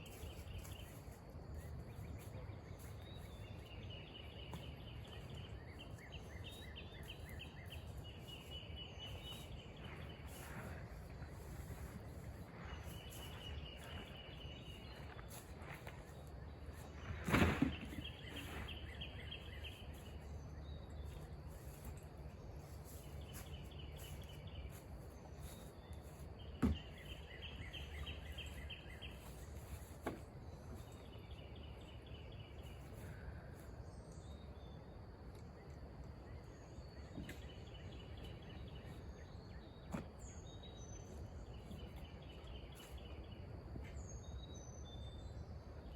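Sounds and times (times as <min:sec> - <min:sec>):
steady low rumble: 0:00.0 - 0:35.7.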